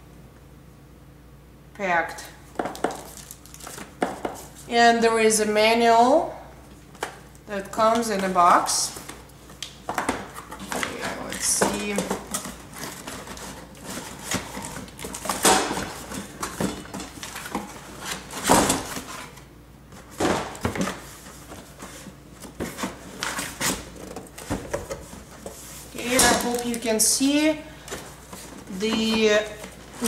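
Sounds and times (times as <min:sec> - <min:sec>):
packaging rustling and scraping: 0:02.6 - 0:04.7, 0:06.9 - 0:30.0.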